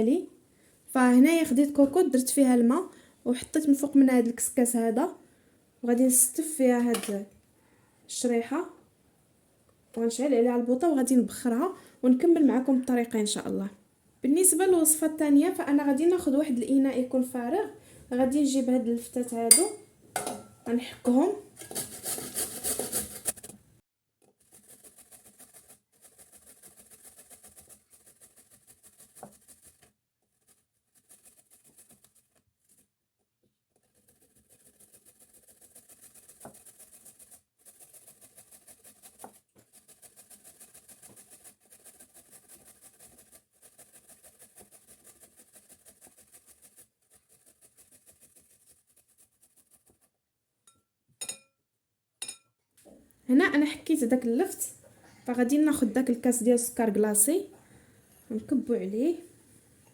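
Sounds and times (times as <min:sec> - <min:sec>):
kitchenware clatter: 0:19.4 - 0:23.4, 0:50.7 - 0:51.5, 0:52.2 - 0:52.5
grating on a grater: 0:21.6 - 0:23.5, 0:24.4 - 0:32.9, 0:33.8 - 0:50.1.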